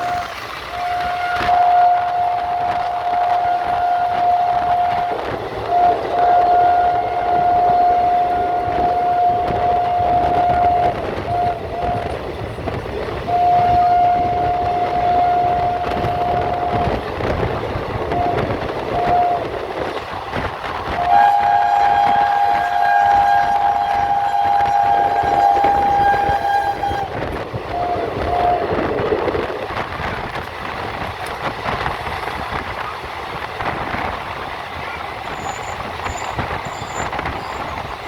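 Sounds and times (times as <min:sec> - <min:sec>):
train horn blasts: 0:00.0 - 0:29.4
passing train rumble: 0:00.0 - 0:38.0.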